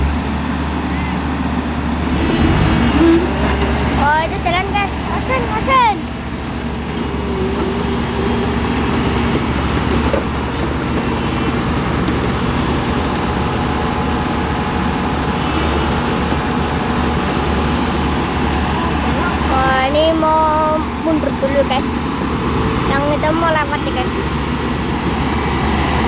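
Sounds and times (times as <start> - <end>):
heavy diesel engine droning: 0.0 - 26.0.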